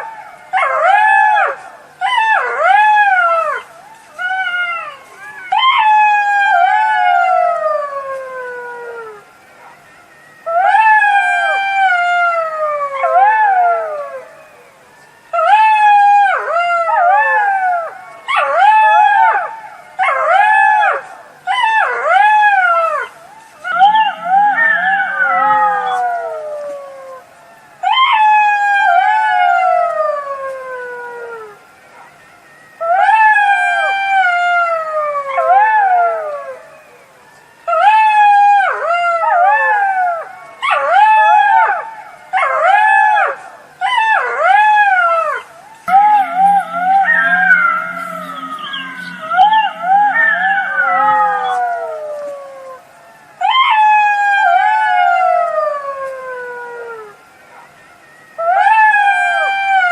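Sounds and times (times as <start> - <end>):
jackal howling: 0.0 - 9.8, 10.4 - 14.7, 15.3 - 32.2, 32.8 - 37.1, 37.7 - 57.7, 58.4 - 59.9.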